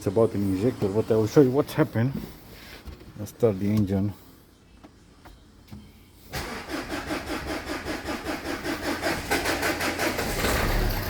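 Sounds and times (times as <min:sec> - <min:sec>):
starter motor cranking engine: 0:06.3 - 0:11.0
diesel engine running rumble: 0:07.8 - 0:11.0.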